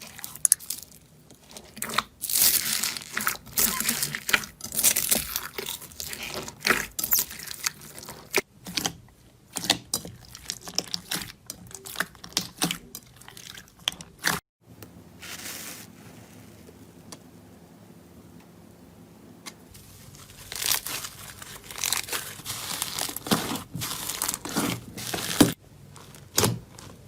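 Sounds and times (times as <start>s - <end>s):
slime crackling and popping: 20.2s - 25.6s.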